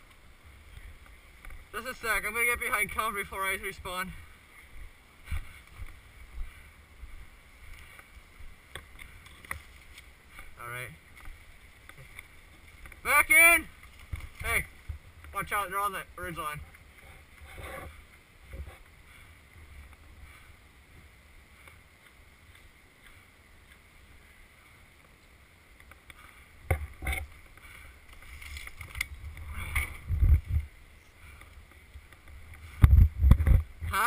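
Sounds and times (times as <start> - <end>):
wind rumble on microphone: 28.8 - 30.8, 31.9 - 34.0.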